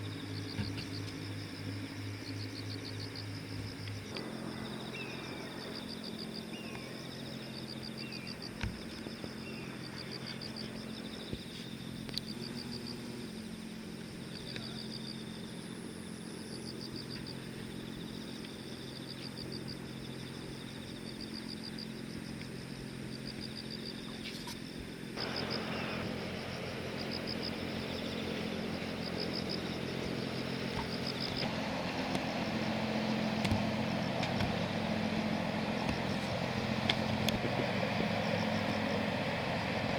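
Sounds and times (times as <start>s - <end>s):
high pulsed chirping: 0.0s - 22.8s
boat engine humming: 0.0s - 39.9s.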